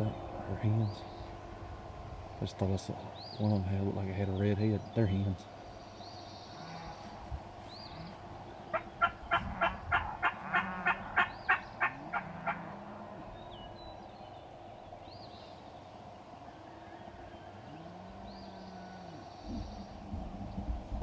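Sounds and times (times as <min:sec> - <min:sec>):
turkey yelps: 0:08.7 - 0:12.8.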